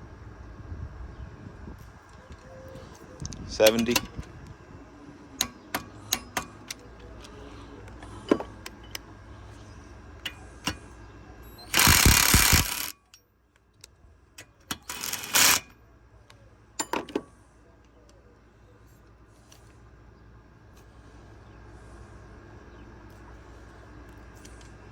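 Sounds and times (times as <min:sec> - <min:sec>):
tool handling clicks and knocks: 0:03.3 - 0:04.5, 0:05.4 - 0:09.1, 0:10.2 - 0:11.0, 0:16.8 - 0:17.3
impact driver hammering: 0:05.4 - 0:07.0, 0:11.7 - 0:13.1, 0:14.4 - 0:15.7.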